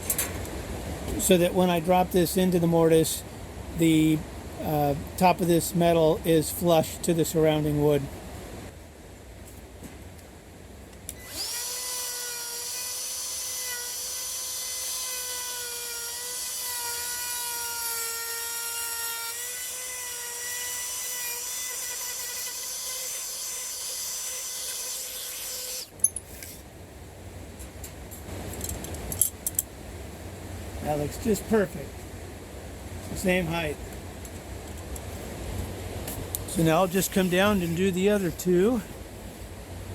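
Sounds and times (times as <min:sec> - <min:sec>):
wood router cutting: 0:11.1 - 0:25.9.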